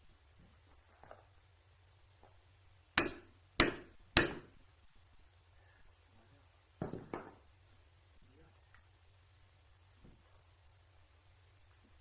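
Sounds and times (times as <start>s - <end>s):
hammer blows: 3.0s - 4.6s.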